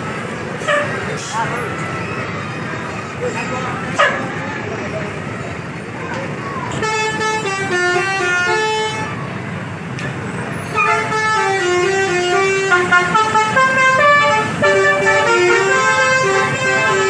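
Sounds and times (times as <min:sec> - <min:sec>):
musical multi-tone bus horn: 0:00.0 - 0:01.2, 0:06.6 - 0:09.5, 0:10.6 - 0:17.0.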